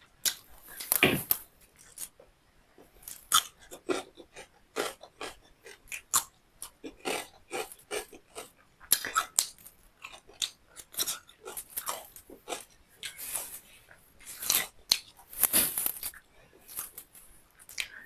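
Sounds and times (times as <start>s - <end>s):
wet chewing: 2.8s - 18.0s.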